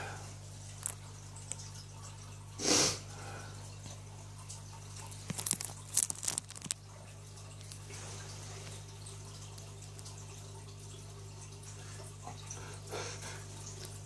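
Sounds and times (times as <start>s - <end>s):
small irregular clicks and crackles: 0.6s - 2.2s, 3.8s - 8.0s, 8.6s - 12.6s, 13.6s - 14.0s.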